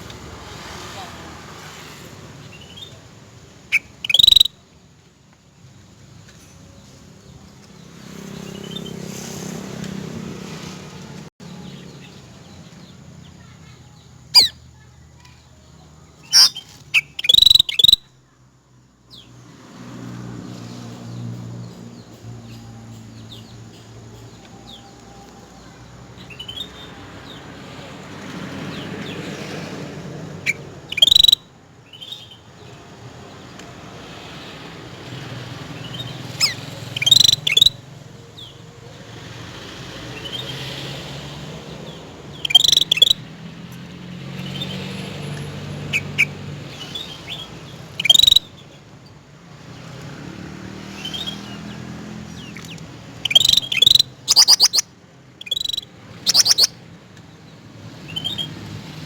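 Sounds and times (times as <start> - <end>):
bird calling sharply: 3.6 - 4.6, 14.3 - 14.6, 16.2 - 18.1, 30.5 - 31.4, 36.0 - 37.8, 42.3 - 43.2, 45.9 - 48.5, 52.4 - 56.8.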